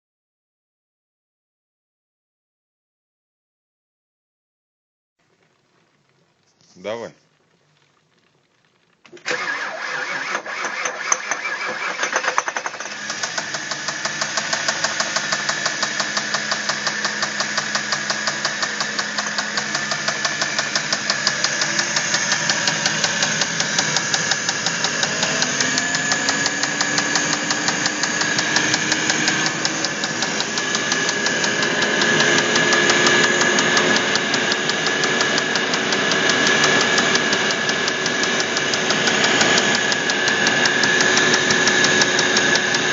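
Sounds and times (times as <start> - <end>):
engine cranking: 9.1 - 42.9
rapid engine knocking: 9.4 - 42.9
car engine running: 12.2 - 42.9.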